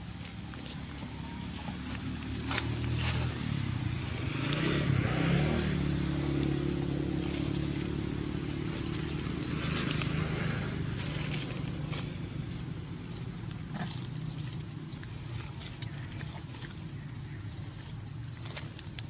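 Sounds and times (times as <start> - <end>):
vehicle engine running: 0.0 - 19.0.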